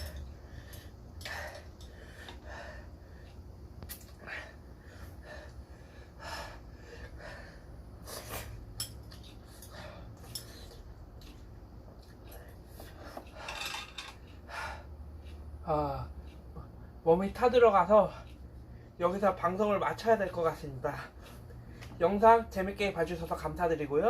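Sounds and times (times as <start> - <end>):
man breathing hard and sniffing: 0.0 - 8.7, 9.3 - 10.9.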